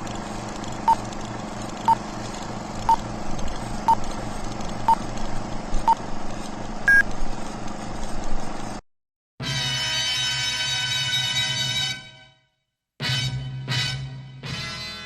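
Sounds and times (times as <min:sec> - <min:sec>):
steady hum: 0:00.0 - 0:08.8.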